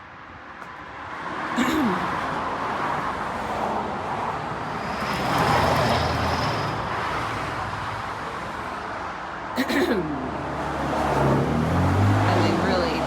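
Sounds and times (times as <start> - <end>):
road traffic noise: 0.0 - 13.0
motor vehicle passing by: 10.2 - 13.0.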